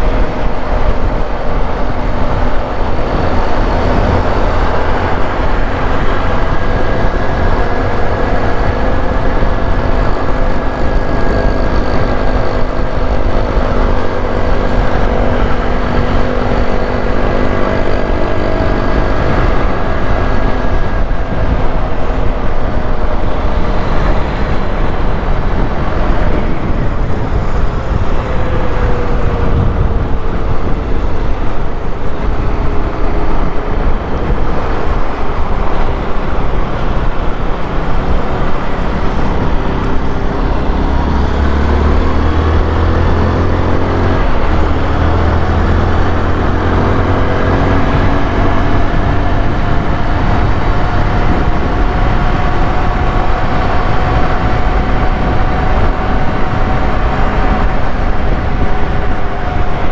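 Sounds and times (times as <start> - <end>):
motorcycle engine running: 0.0 - 59.9
wind rumble on microphone: 0.0 - 59.9.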